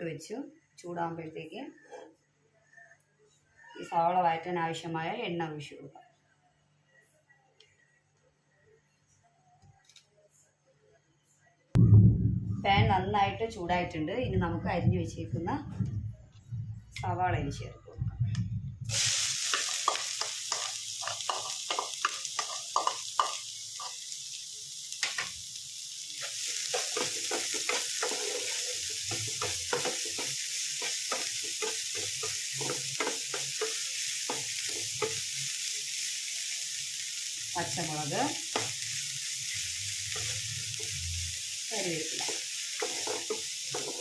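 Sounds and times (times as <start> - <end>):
onions sizzling in hot oil: 18.9 - 44.0.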